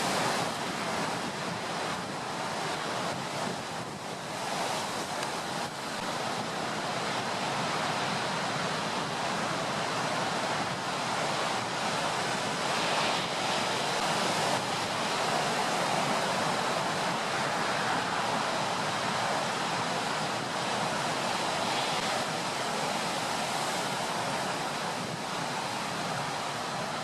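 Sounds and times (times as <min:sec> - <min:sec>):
waves breaking: 0:00.0 - 0:27.0
wind: 0:00.0 - 0:27.0.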